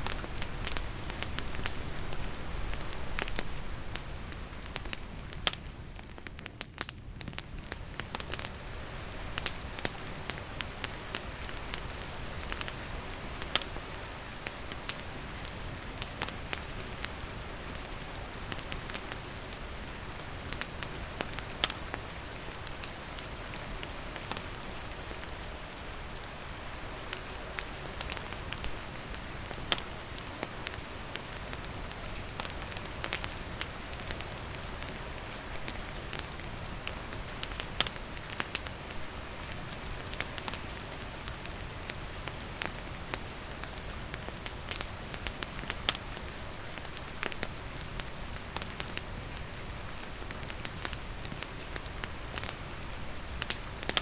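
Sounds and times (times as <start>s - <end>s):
steady rain falling: 0.0s - 54.0s
wood fire crackling: 0.0s - 54.0s.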